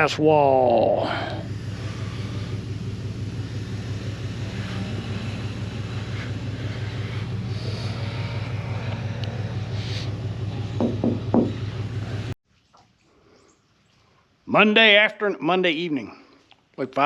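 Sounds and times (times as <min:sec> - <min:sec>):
large engine humming: 0:00.0 - 0:12.4.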